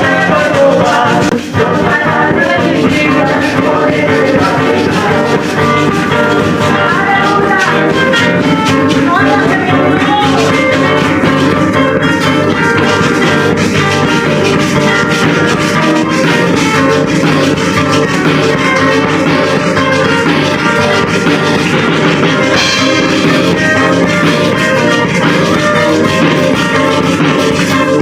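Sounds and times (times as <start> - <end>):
band music with guitar: 0.0 - 28.0.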